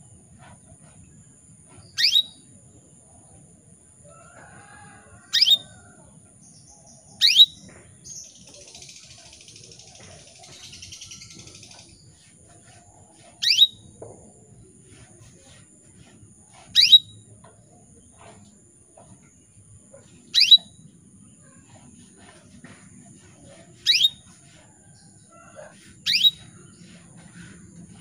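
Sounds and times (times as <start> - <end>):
canary chirping: 1.8 - 2.4, 7.2 - 13.9, 15.0 - 17.3, 20.0 - 20.8, 23.2 - 24.6, 25.7 - 27.5.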